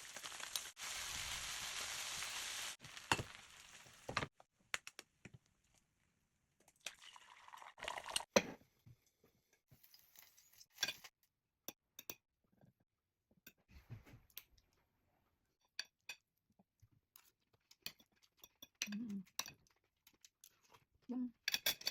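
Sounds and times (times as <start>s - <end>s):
utensils clinking on dishes: 21.5s - 21.9s.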